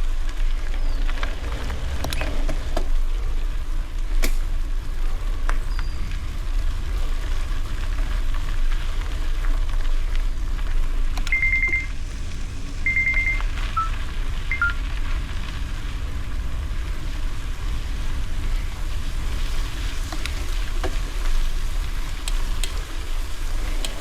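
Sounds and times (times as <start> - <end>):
bicycle rolling on gravel: 0.0 - 24.0
wind rumble on microphone: 0.0 - 24.0
short high electronic beep: 12.9 - 13.9, 14.5 - 14.8.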